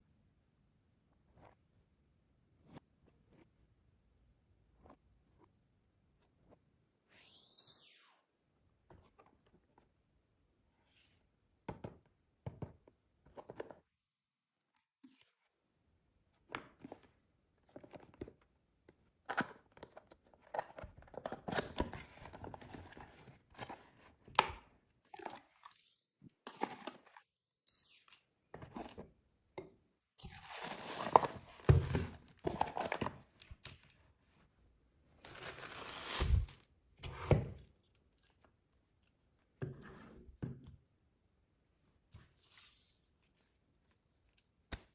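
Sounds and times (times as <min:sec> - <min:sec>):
packaging crinkling and rustling: 0:30.2 - 0:33.9, 0:35.2 - 0:36.6.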